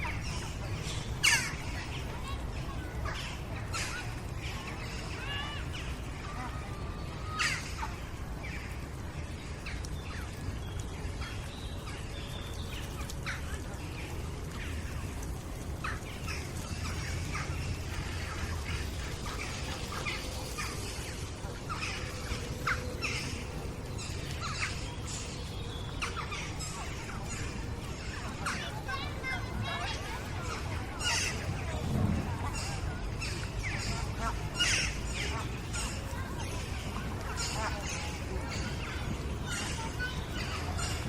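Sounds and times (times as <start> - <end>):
birds chirping: 0.0 - 41.0
distant children playing: 0.0 - 41.0
steady low rumble: 0.0 - 41.0.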